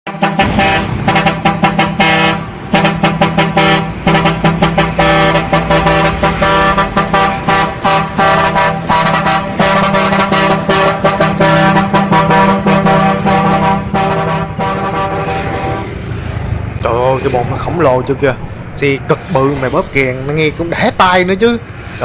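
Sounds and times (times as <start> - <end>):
truck air horns blasting: 0.0 - 16.4.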